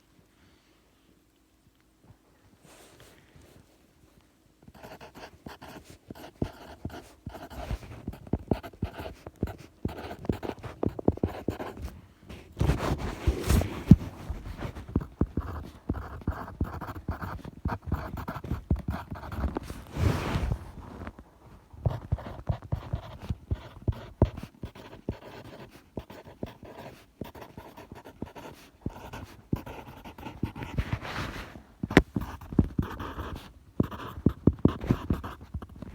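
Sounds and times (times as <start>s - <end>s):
pen scratching on paper: 4.7s - 11.9s, 12.6s - 20.6s, 21.8s - 31.3s, 31.9s - 35.9s.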